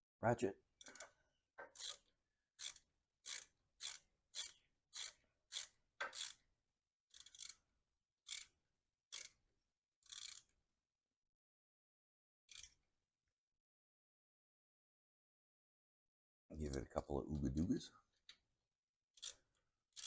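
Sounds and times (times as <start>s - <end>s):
hand ratchet clicking: 0.8s - 6.4s, 7.1s - 7.6s, 8.3s - 9.4s, 10.1s - 10.5s, 12.5s - 12.8s, 19.2s - 20.0s.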